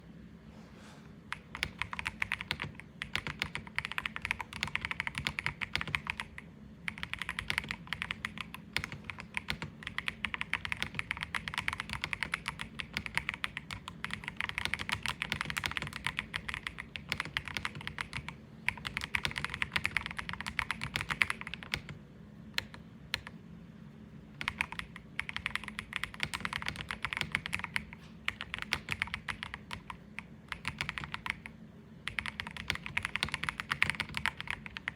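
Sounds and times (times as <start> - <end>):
mechanical keyboard typing: 1.3 - 22.0, 22.6 - 23.4, 24.4 - 34.9.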